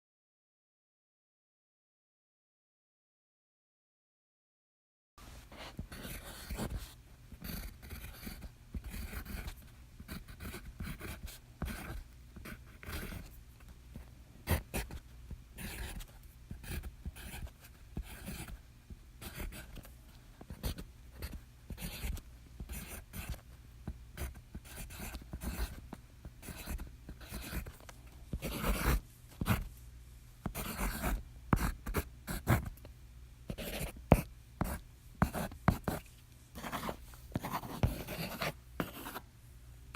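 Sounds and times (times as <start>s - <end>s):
pencil scratching on paper: 5.6s - 13.3s, 15.6s - 18.6s, 20.5s - 23.4s, 24.2s - 25.8s, 26.4s - 27.7s, 28.3s - 29.7s, 30.5s - 32.7s, 33.5s - 36.0s, 36.6s - 39.2s.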